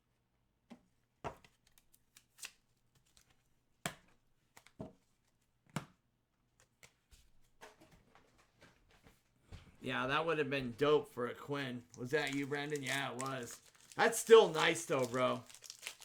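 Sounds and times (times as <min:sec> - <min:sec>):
card rustle: 0:11.8 - 0:16.0
cards clicking and tapping: 0:11.9 - 0:16.0.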